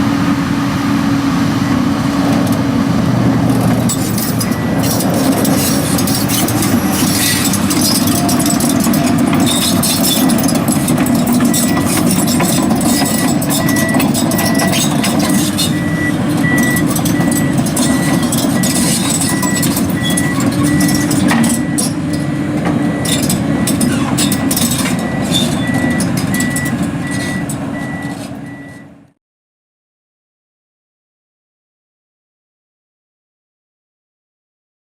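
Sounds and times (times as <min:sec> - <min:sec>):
excavator running: 0:00.0 - 0:29.2
clanks and clicks: 0:03.4 - 0:28.5
high beeping alarm: 0:03.9 - 0:28.9.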